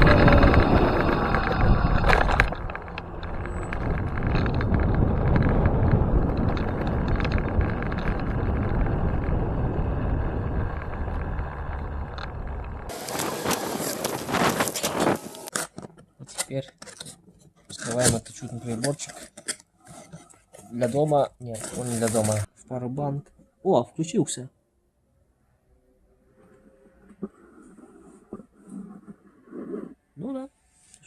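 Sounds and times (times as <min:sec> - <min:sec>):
wind buffeting microphone: 0:00.0 - 0:15.5
road and tyre rumble: 0:00.0 - 0:15.6.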